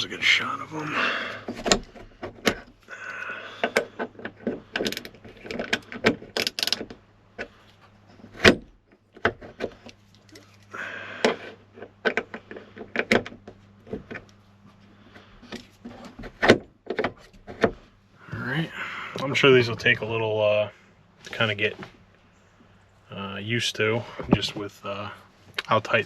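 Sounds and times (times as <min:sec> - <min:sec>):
hands clicking and knocking locks: 0:01.5 - 0:07.6.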